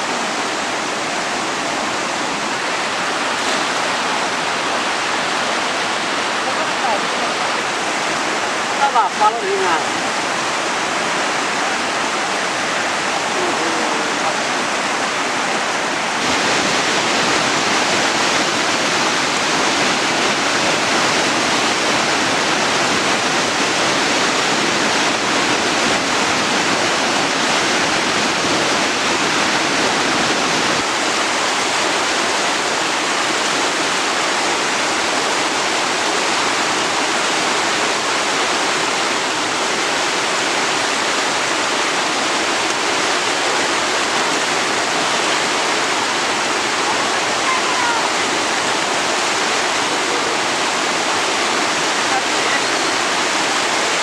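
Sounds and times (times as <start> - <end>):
fast river rushing: 0.0 - 54.0.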